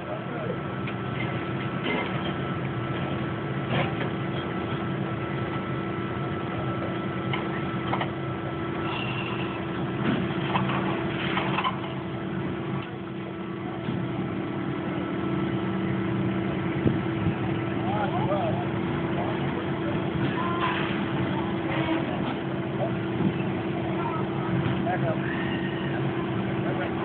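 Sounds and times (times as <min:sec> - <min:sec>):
engine drone: 0:00.0 - 0:27.0
knocks and clanks: 0:10.0 - 0:12.0.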